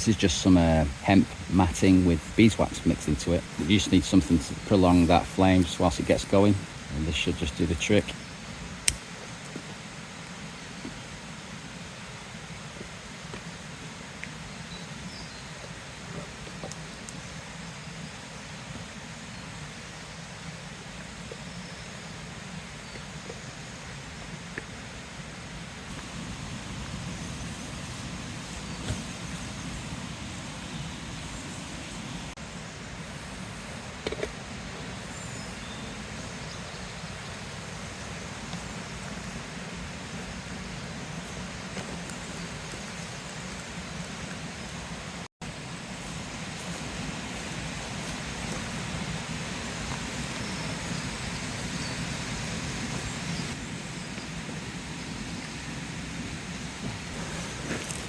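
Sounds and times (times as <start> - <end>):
fire low rumble: 0.0 - 8.9, 25.9 - 44.9
fire crackle: 0.0 - 9.3, 25.9 - 32.4
faint crackles: 25.9 - 32.3, 56.6 - 58.0.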